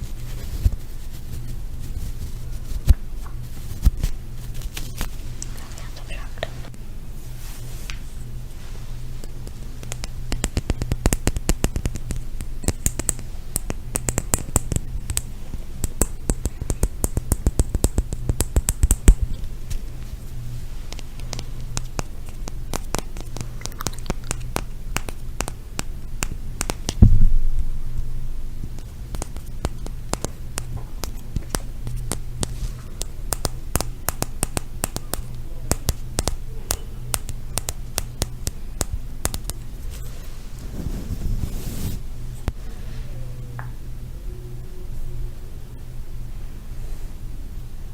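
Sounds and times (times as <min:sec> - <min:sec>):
low steady hum: 0:00.0 - 0:47.9
tapping and scratching on objects: 0:09.2 - 0:27.0, 0:28.7 - 0:40.1
heavy thump: 0:27.0 - 0:28.2.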